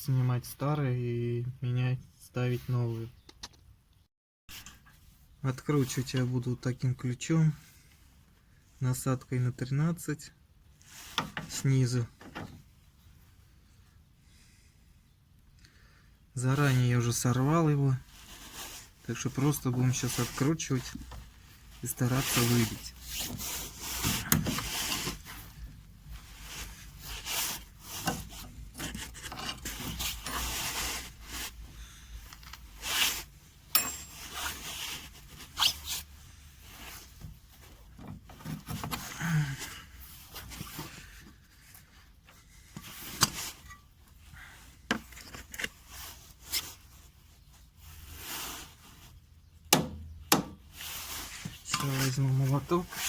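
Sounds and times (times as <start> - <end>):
wrench scraping metal: 33.8 - 34.6.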